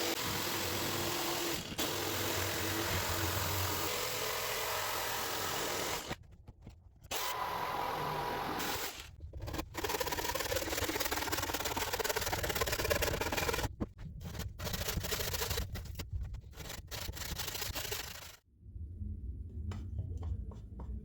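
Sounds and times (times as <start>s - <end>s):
wood scraping: 9.3s - 18.4s.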